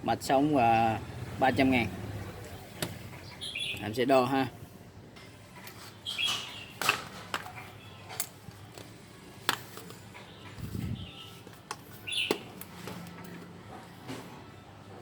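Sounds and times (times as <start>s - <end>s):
bird chirps: 3.2s - 3.9s, 6.0s - 6.8s, 10.3s - 11.4s, 12.0s - 12.5s.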